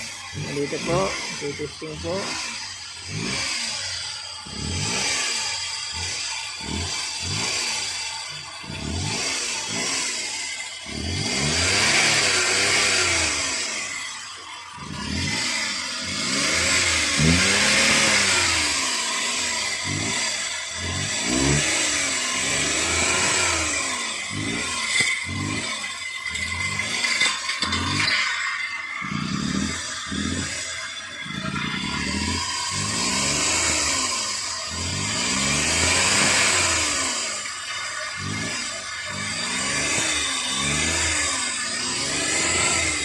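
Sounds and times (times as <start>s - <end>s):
engine revving up and down: 0.0s - 43.0s.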